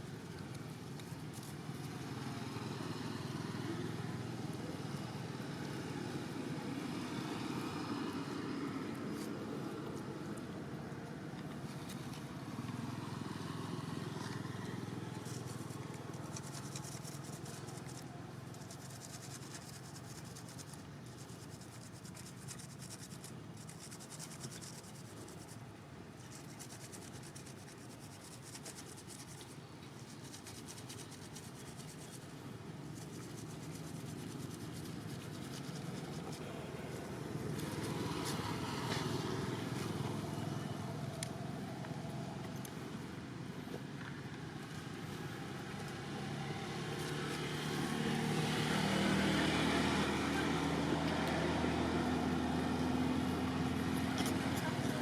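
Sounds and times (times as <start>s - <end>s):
scratchy rustling: 15.2s - 25.6s, 26.2s - 40.5s.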